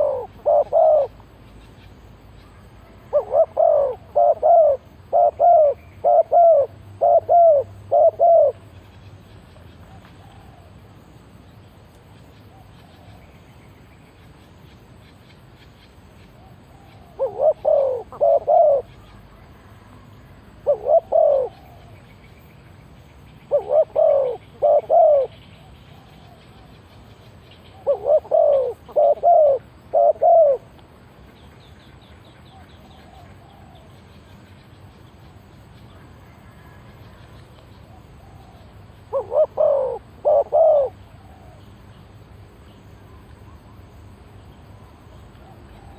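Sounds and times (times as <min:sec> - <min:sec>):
dove cooing: 0:00.0 - 0:01.3, 0:03.1 - 0:08.6, 0:16.4 - 0:19.1, 0:20.6 - 0:22.0, 0:23.5 - 0:26.6, 0:27.7 - 0:30.7, 0:37.9 - 0:41.6
faint insect chirring: 0:00.0 - 0:45.9.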